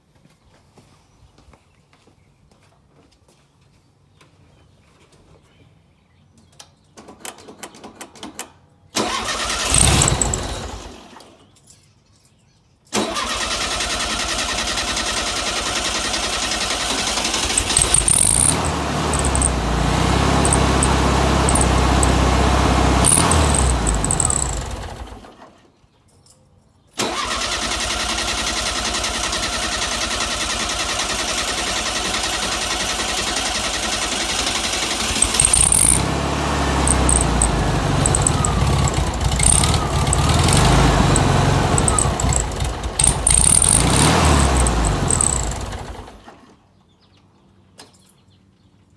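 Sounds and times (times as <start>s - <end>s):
car engine cranking on starter: 9.0s - 11.2s, 13.0s - 25.5s, 27.0s - 46.4s.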